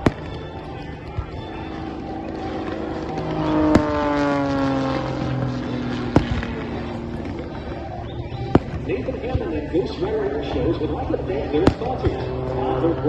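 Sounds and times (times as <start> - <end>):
sharp bangs: 0.0 - 9.8
propeller airplane flying past: 0.0 - 13.0.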